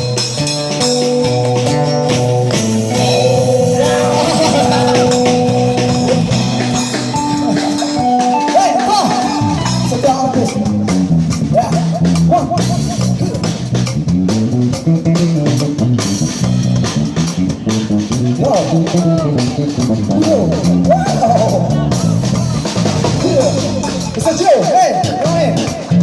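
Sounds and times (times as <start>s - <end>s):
bass line: 0.0s - 26.0s
drum kit: 0.0s - 26.0s
guitar: 0.0s - 26.0s
person singing: 2.9s - 9.6s.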